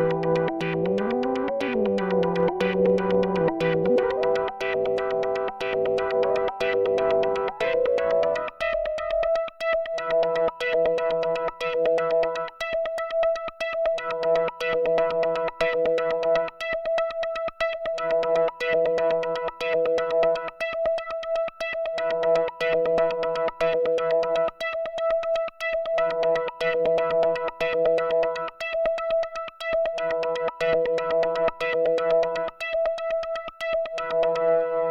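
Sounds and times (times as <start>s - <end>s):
synthesizer note sequence: 0.0s - 8.5s
low synthesizer chords: 0.0s - 12.3s.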